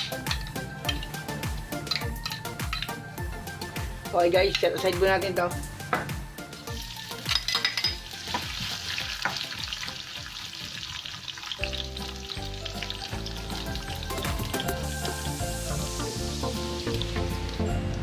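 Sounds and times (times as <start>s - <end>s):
background music: 0.0s - 18.0s
food sizzling in a frying pan: 6.5s - 18.0s.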